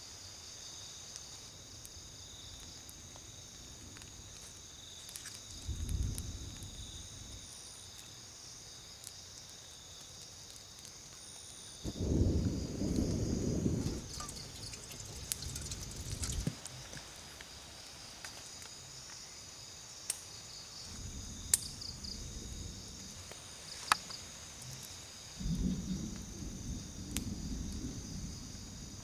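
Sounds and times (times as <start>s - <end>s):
crickets trilling: 0.0s - 29.0s
low rumbling noise: 11.9s - 16.6s.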